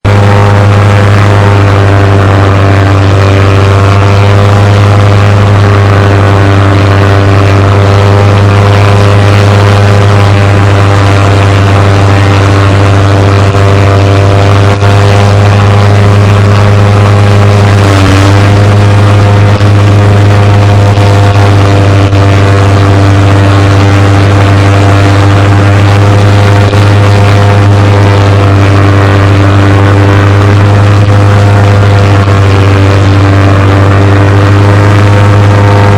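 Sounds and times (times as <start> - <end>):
propeller plane engine droning: 0.0 - 35.9.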